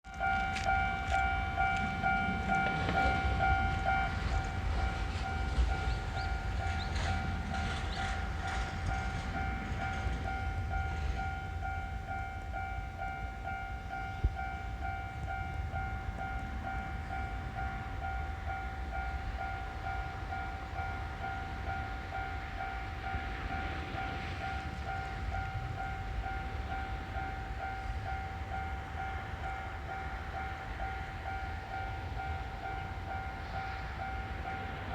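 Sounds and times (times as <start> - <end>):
train wheels clattering: 0.1 - 11.4.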